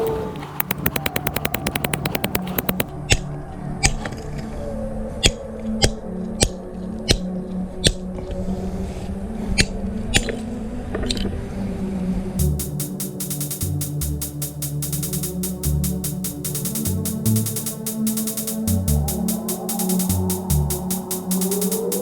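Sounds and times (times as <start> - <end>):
beat of sharp hits: 0.6 - 2.9, 12.4 - 22.0
drum roll: 0.6 - 2.9, 12.4 - 22.0
sustained low notes: 12.4 - 22.0.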